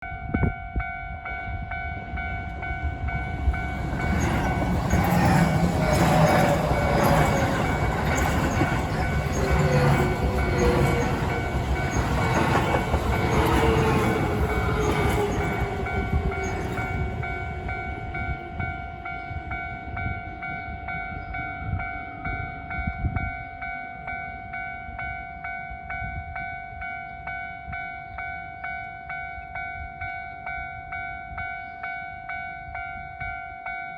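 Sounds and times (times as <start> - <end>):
train wheels clattering on rails: 2.5 - 18.5
train motor whine: 2.6 - 19.5.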